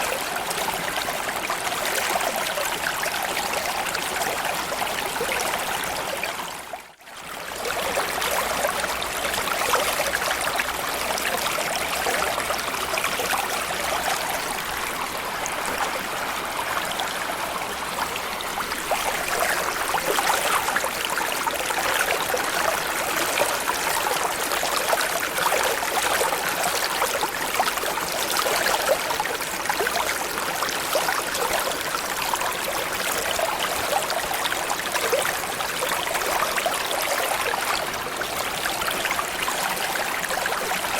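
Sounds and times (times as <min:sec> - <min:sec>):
stream burbling over stones: 0:00.0 - 0:40.9.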